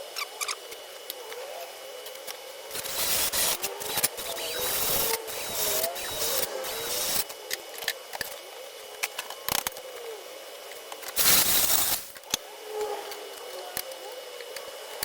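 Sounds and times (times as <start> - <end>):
metal and tools clicking: 2.1 - 8.4
welder crackling: 2.7 - 7.3, 11.2 - 12.3.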